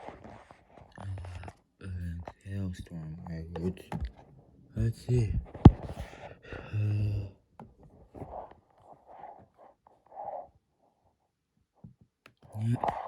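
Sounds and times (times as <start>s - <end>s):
person speaking: 1.0s - 4.1s, 4.8s - 7.3s, 12.6s - 13.0s.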